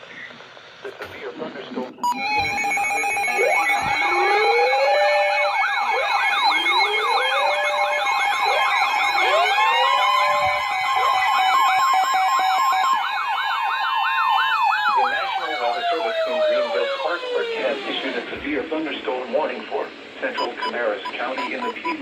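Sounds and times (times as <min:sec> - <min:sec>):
steady alert tone: 0:02.0 - 0:10.3
sirens yelping: 0:02.0 - 0:19.5, 0:20.3 - 0:22.0
sirens wailing: 0:02.0 - 0:22.0.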